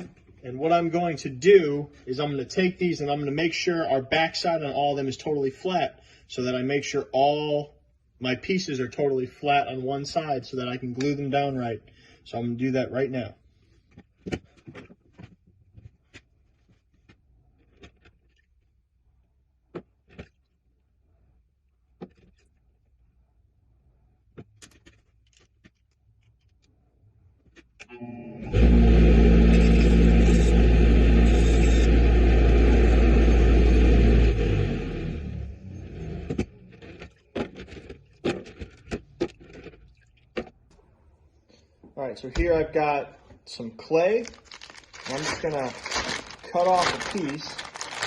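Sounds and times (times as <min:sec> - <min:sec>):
grinding wheel motor spinning down: 0:28.0 - 0:36.3.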